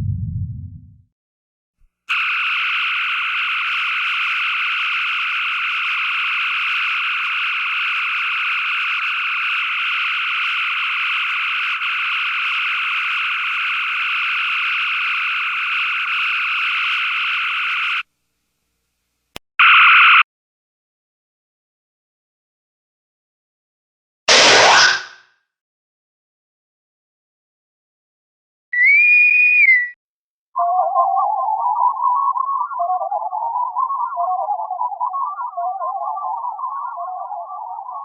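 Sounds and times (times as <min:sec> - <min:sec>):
synthesized electronic tone: 0:30.6 - 0:38.0.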